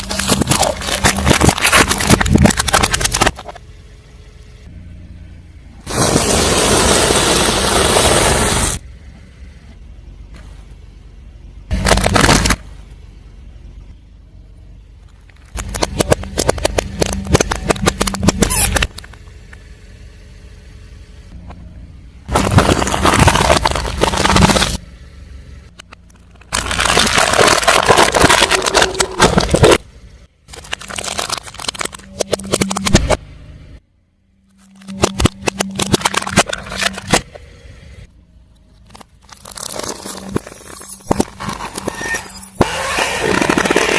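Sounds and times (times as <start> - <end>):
tyre crushing crunchy objects: 0.0 - 3.6, 11.7 - 12.8, 22.3 - 24.8, 26.3 - 29.8, 30.5 - 33.2, 38.8 - 43.9
car engine humming: 0.0 - 43.9
tyre crunching over objects: 22.3 - 24.8.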